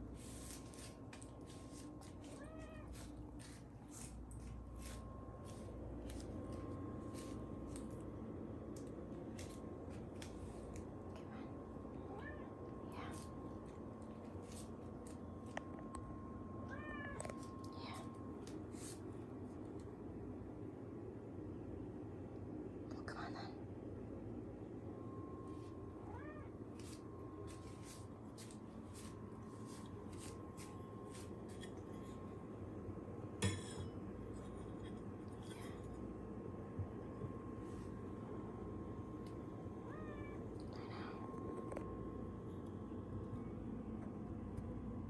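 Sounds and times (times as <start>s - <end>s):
cat meowing: 2.3s - 3.0s, 26.0s - 26.5s, 39.8s - 40.4s.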